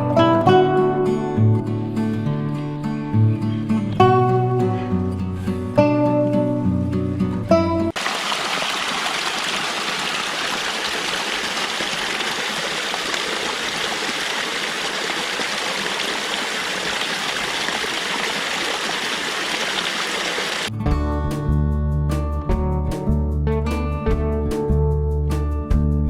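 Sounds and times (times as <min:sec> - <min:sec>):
stream water flowing: 0:07.9 - 0:20.7.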